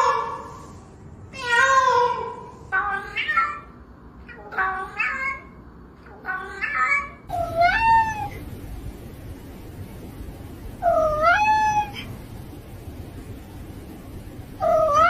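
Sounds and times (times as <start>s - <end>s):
cat meowing: 4.3s - 5.5s, 6.1s - 8.4s, 10.8s - 12.1s, 14.6s - 15.0s.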